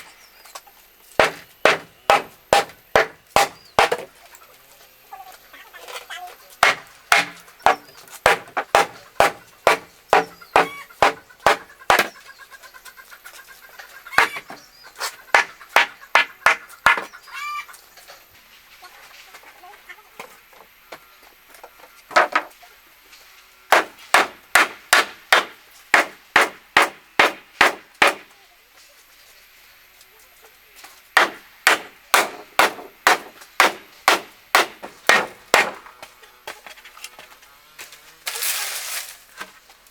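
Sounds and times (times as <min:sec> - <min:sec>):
chopping blows into wood: 0:01.2 - 0:04.1, 0:06.6 - 0:12.1, 0:23.7 - 0:28.3, 0:31.2 - 0:35.8.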